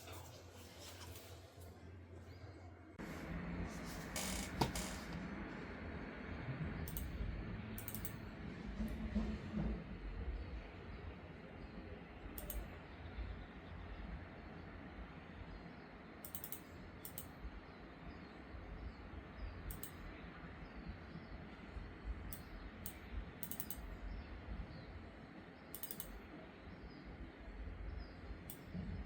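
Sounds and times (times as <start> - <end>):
mouse buttons clicking: 7.8 - 8.2, 16.2 - 17.3, 19.7 - 20.0, 23.4 - 23.8, 25.8 - 26.1.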